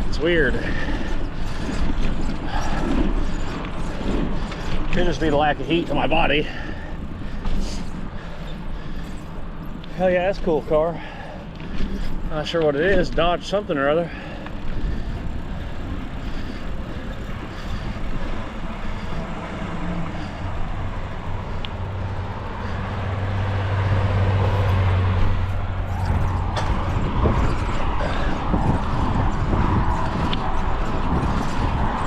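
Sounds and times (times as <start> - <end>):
vehicle passing: 0.0 - 32.0
wind noise on microphone: 22.8 - 32.0.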